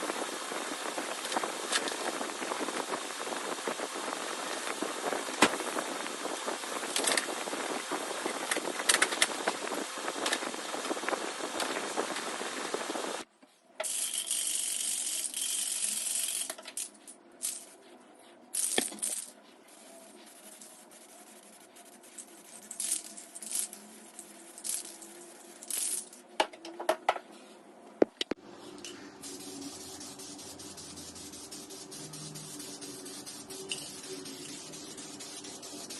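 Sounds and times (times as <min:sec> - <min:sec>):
aerosol spray paint hissing: 0:19.7 - 0:22.8, 0:29.2 - 0:35.9.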